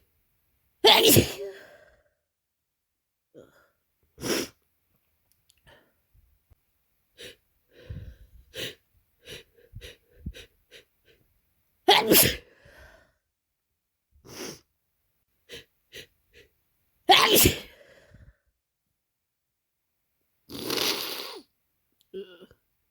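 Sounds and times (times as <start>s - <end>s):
person sneezing: 0.8s - 1.8s, 11.9s - 12.5s, 17.1s - 17.8s, 20.5s - 21.5s
person sniffing: 4.2s - 4.6s, 14.3s - 14.7s, 20.5s - 21.5s.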